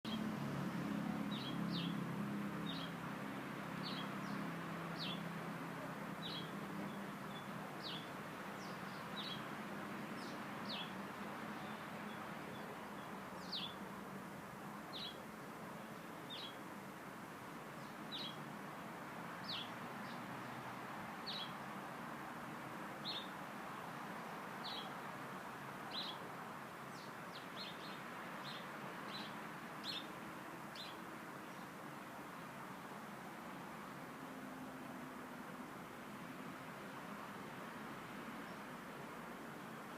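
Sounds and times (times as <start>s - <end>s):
outdoor background noise: 0.0s - 39.9s
bird chirping: 1.0s - 2.0s, 2.6s - 3.0s, 3.8s - 4.4s, 5.0s - 5.3s, 6.2s - 9.5s, 10.2s - 13.8s, 14.9s - 15.2s, 15.8s - 16.6s, 17.8s - 18.4s, 19.4s - 20.2s, 21.2s - 21.6s, 23.0s - 23.4s, 24.6s - 25.0s, 25.9s - 26.3s, 26.9s - 31.7s.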